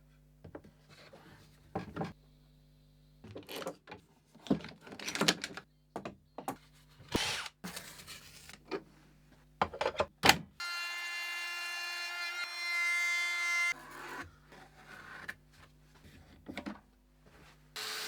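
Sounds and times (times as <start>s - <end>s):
power tool whining: 10.6s - 14.2s, 17.8s - 18.0s.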